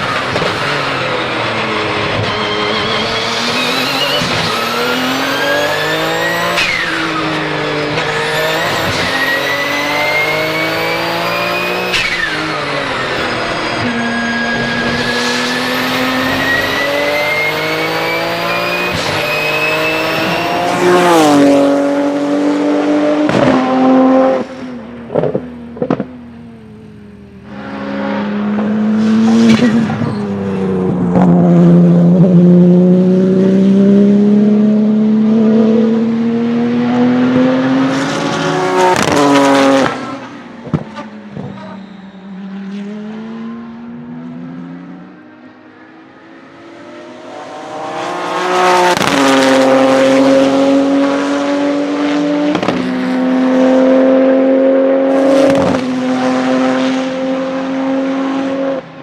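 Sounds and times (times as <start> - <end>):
race car engine at full throttle: 0.0 - 59.0
turbo whistle: 16.2 - 20.4, 41.5 - 42.5
exhaust pops: 25.1 - 26.1.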